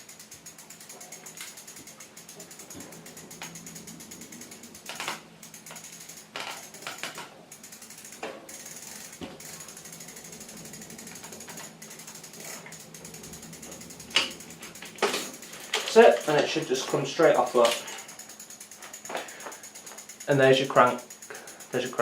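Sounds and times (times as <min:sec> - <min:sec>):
faint even ticking: 0:00.0 - 0:22.0
spanner metal clicks and knocks: 0:00.0 - 0:22.0.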